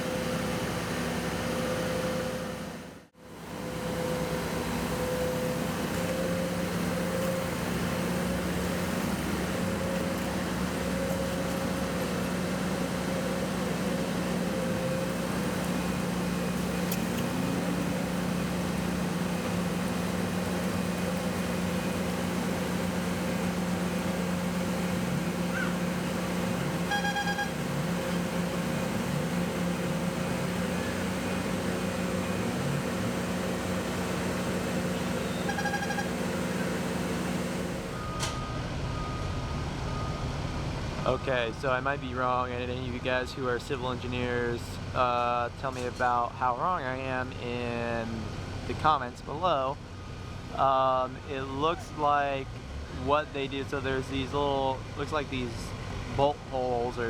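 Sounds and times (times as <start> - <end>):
freeway traffic noise: 0.0 - 57.0
heavy engine humming: 0.0 - 57.0
electronic beeps: 26.9 - 27.6, 35.2 - 36.1.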